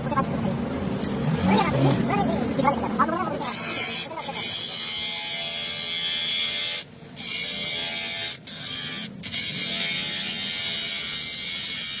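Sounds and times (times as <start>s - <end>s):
handheld power tool buzzing: 3.4s - 12.0s.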